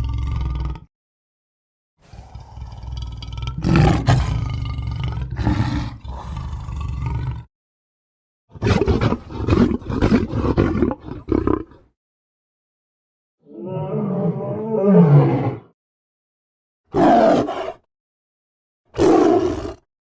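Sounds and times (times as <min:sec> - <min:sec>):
cartoon lion roaring: 0:00.0 - 0:00.9, 0:02.0 - 0:07.5, 0:08.5 - 0:11.9, 0:13.4 - 0:15.8, 0:16.9 - 0:17.9, 0:18.9 - 0:19.9.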